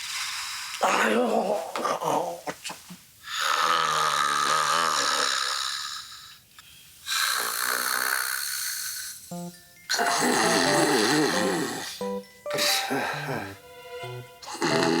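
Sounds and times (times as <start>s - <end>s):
person snoring heavily: 3.3s - 6.3s, 7.1s - 9.2s, 9.9s - 12.0s, 14.4s - 15.0s.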